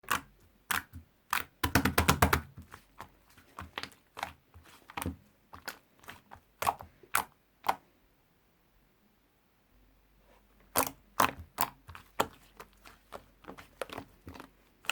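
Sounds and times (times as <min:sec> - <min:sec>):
slime clicking and crackling: 0:00.0 - 0:07.8, 0:10.7 - 0:14.9.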